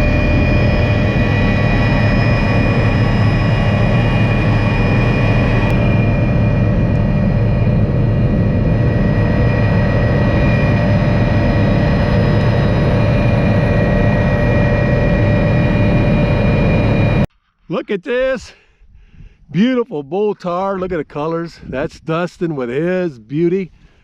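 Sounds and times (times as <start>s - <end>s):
helicopter rotor and engine drone: 0.0s - 17.3s
high turbine whine: 0.0s - 17.6s.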